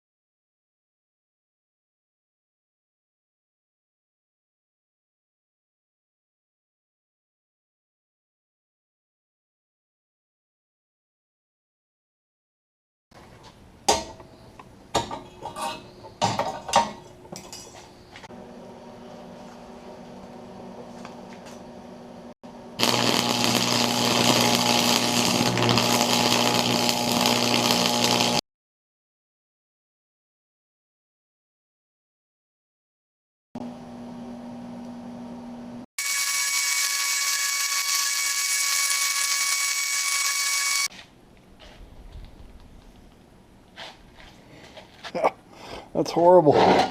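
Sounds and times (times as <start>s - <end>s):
power tool high-pitched whine: 22.8s - 28.4s, 36.0s - 40.9s.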